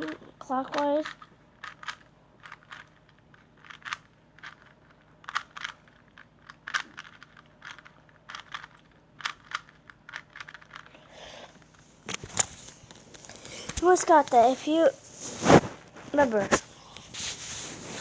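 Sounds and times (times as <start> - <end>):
plastic puzzle cube clicking: 0.1 - 3.0, 3.6 - 10.9.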